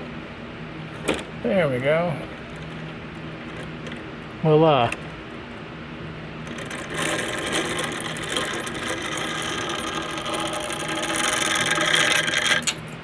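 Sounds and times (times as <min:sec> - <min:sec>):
clock gears clicking: 0:06.4 - 0:12.8.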